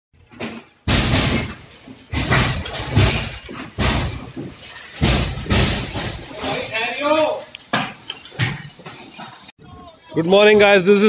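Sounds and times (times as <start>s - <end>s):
debris rattling: 0.2s - 9.2s.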